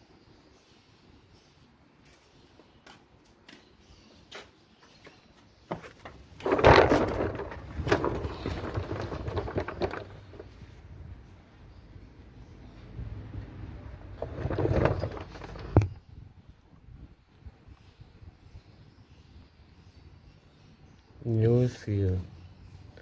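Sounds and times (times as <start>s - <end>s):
clattering and knocking: 5.7s - 10.6s, 14.1s - 16.0s.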